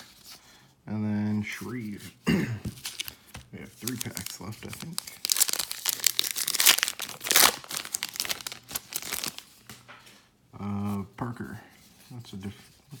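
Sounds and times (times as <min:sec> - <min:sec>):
wrapper tearing and crinkling: 0:02.8 - 0:03.2, 0:03.8 - 0:09.5.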